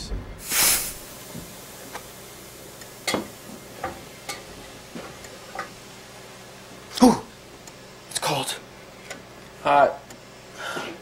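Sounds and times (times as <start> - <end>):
brief hiss: 0.4 - 1.3.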